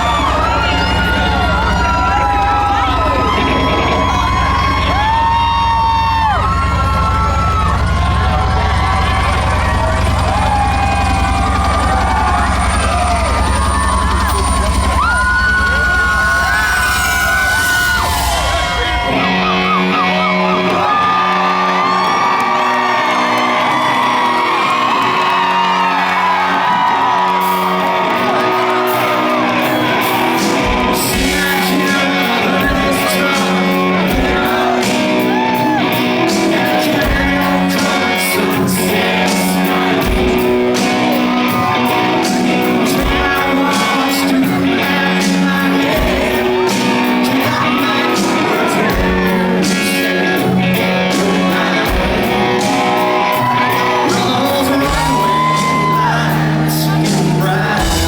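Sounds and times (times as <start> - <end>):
live country band playing: 0.0 - 58.0
man singing: 28.1 - 58.0.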